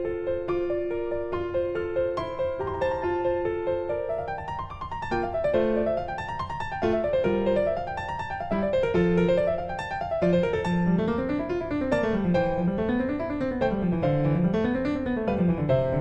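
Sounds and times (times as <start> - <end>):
piano music: 0.0 - 16.0.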